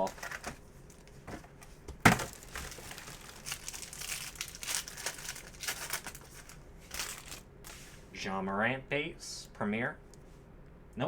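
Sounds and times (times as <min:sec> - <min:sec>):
plastic wrapping tearing and crinkling: 0:00.0 - 0:07.9.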